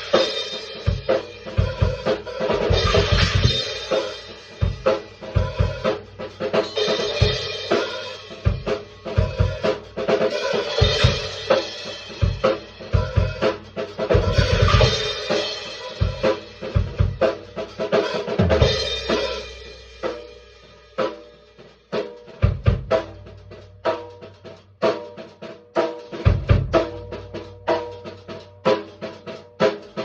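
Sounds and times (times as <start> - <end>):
snare drum: 0.0 - 20.3, 21.0 - 30.0
cymbals: 0.0 - 25.0
kick drum: 26.3 - 27.1.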